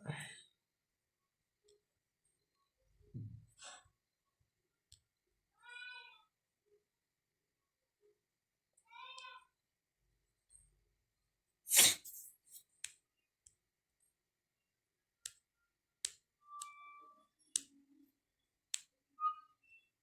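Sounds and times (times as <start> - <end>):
sharp clicks and taps: 17.5 - 17.8.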